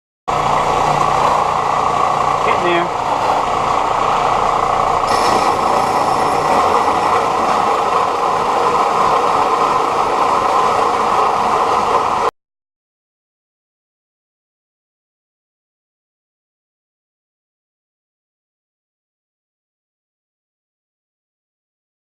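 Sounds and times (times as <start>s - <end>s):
belt sander grinding steel: 0.6s - 12.2s.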